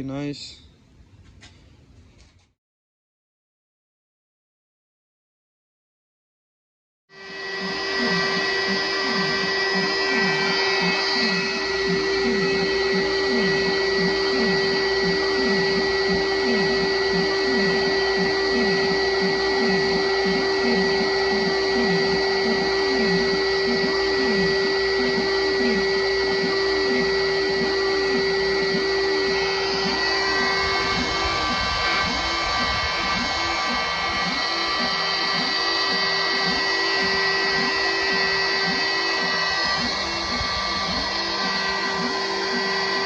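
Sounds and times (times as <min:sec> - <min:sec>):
mid-pitched whine: 0:00.0 - 0:02.5, 0:07.1 - 0:43.0
electric motor machine whining: 0:07.1 - 0:43.0
low pulsing tone: 0:07.1 - 0:43.0.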